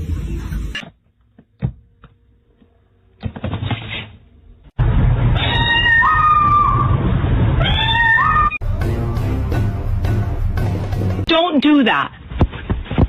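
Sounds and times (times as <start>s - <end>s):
cat meowing: 5.4s - 6.9s, 7.6s - 8.6s.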